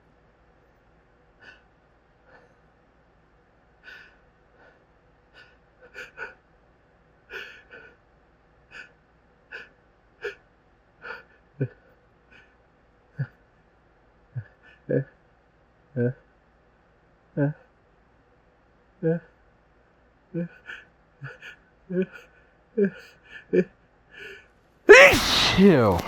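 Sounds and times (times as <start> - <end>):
man gasping breaths: 24.9 - 26.0.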